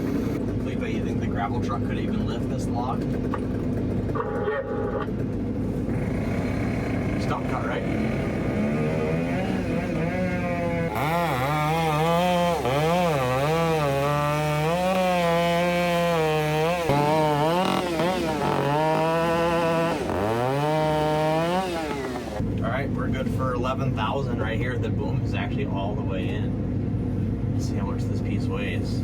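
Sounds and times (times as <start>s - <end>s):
chainsaw cutting through stump: 0.0s - 22.4s.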